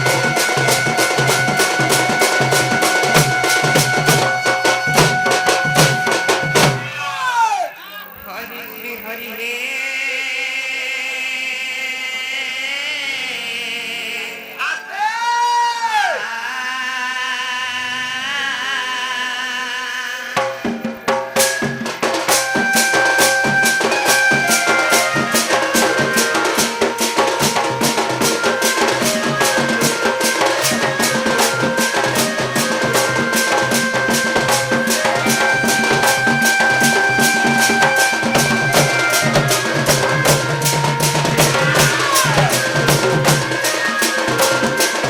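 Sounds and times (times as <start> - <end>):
steady drumbeat: 0.0 - 7.1, 20.4 - 45.0
sustained melody notes: 22.3 - 45.0.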